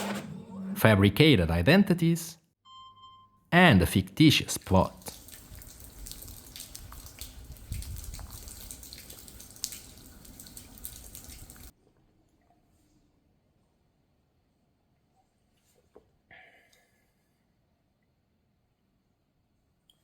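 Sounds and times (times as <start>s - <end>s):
small water-like clicks: 4.9s - 12.5s.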